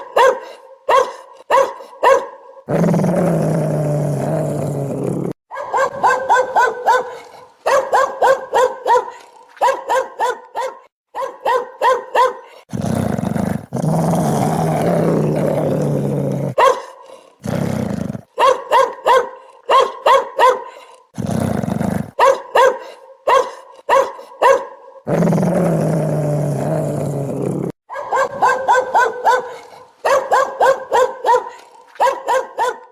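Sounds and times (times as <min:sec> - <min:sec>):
dog barking: 0:00.0 - 0:02.7, 0:05.5 - 0:12.7, 0:16.4 - 0:17.3, 0:18.3 - 0:21.0, 0:22.1 - 0:25.1, 0:27.9 - 0:32.9
dog growling: 0:02.7 - 0:05.4, 0:12.6 - 0:18.3, 0:20.8 - 0:22.2, 0:25.1 - 0:30.0.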